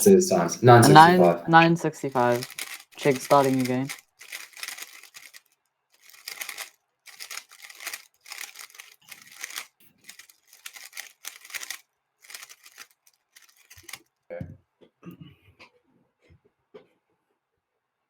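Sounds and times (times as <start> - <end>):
puzzle cube clicking: 2.3 - 14.0.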